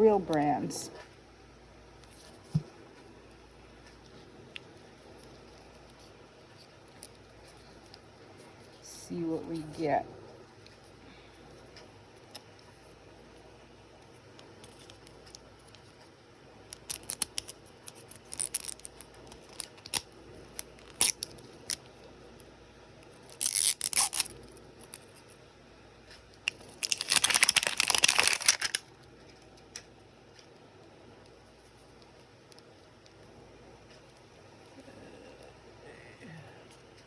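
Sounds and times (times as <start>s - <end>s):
plastic packaging crinkling: 16.7s - 21.8s, 23.2s - 25.2s, 26.4s - 28.9s
plastic packaging tearing: 16.7s - 21.8s, 23.2s - 25.1s, 26.5s - 28.9s.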